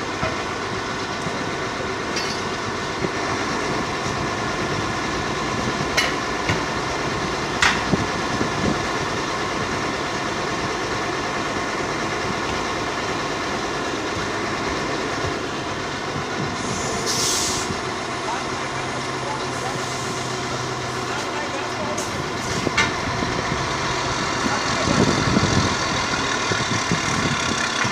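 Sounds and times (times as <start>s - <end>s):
steady mechanical running noise: 0.0s - 27.9s
short hiss: 16.7s - 17.7s.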